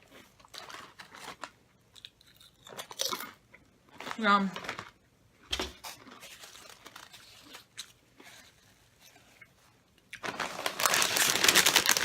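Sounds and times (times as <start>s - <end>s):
potato chips crunching: 0.0s - 5.0s, 10.1s - 12.0s.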